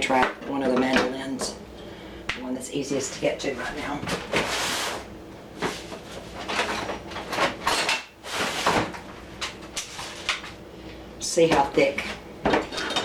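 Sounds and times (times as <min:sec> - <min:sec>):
kitchen utensils scraping and clattering: 0:03.0 - 0:10.5, 0:11.6 - 0:13.0.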